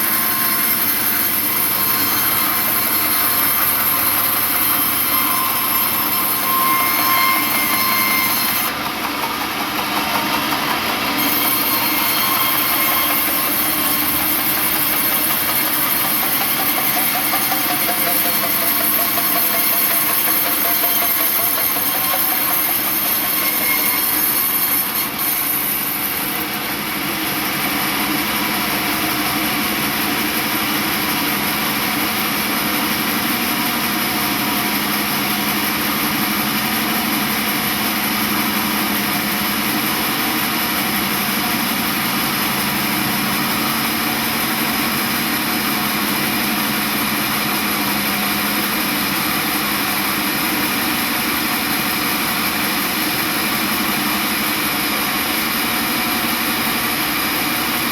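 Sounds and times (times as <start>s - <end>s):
log saw humming and hissing: 0.0s - 29.8s.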